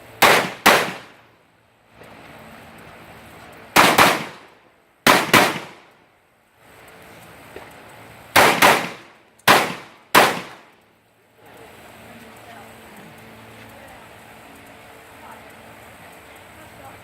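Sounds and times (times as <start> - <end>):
rifle shots echoing: 0.2 - 1.2, 3.8 - 6.0, 8.3 - 10.8.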